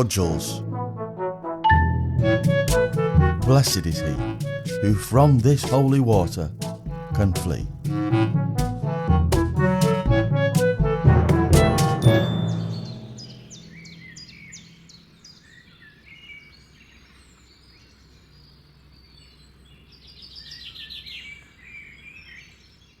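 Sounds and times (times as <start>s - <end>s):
brass music: 0.0s - 14.2s
bird trill: 11.6s - 23.0s
small birds chirping: 12.1s - 23.0s.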